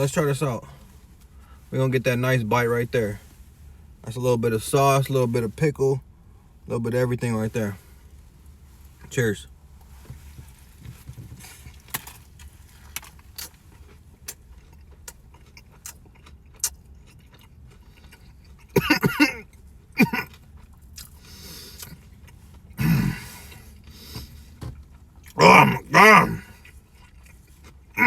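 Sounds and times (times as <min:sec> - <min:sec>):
chewing crunchy food: 0:11.0 - 0:18.8, 0:19.4 - 0:28.0
person breathing: 0:22.8 - 0:24.6.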